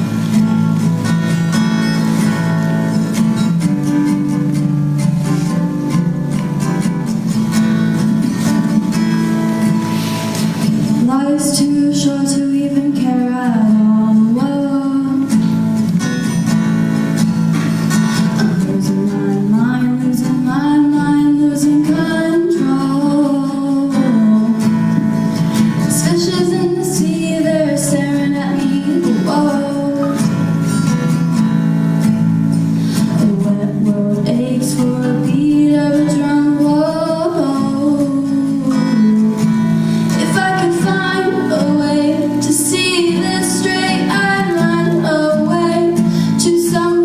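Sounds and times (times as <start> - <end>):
acoustic guitar chords: 0.0 - 47.0
woman singing: 10.7 - 15.6, 18.3 - 30.6, 33.0 - 47.0.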